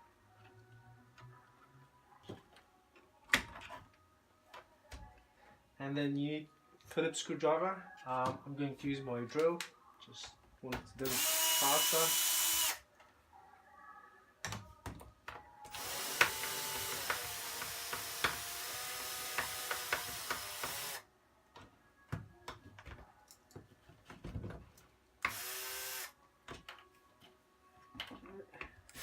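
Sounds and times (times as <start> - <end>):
electric drill whirring: 11.0 - 12.8, 15.7 - 21.0, 25.2 - 26.1.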